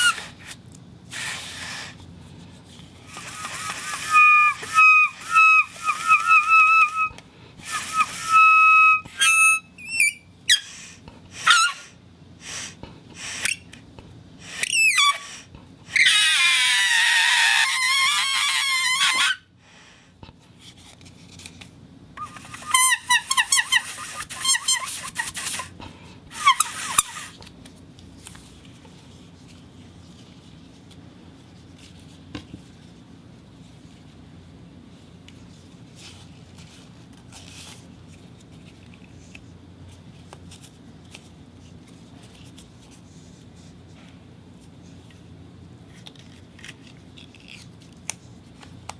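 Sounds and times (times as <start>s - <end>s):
rubber whistle squeaking: 0.0s - 0.3s, 3.1s - 11.9s, 14.5s - 19.5s, 22.2s - 25.7s, 26.3s - 27.3s.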